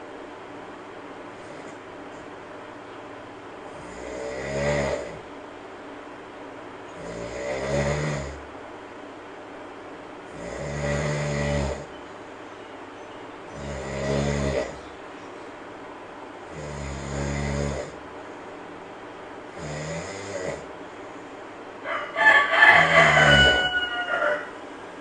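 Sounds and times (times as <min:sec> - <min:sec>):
monkey snoring: 0:01.3 - 0:01.8, 0:03.7 - 0:05.3, 0:07.0 - 0:08.4, 0:10.3 - 0:11.9, 0:13.5 - 0:14.9, 0:16.5 - 0:18.0, 0:19.5 - 0:20.7.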